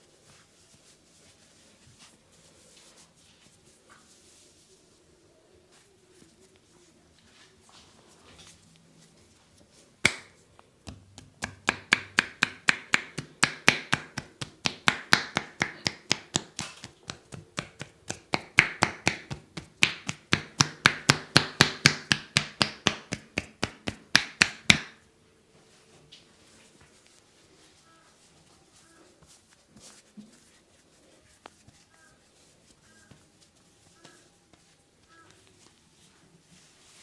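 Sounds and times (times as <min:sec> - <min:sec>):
hands slapping on body: 0:10.0 - 0:25.0.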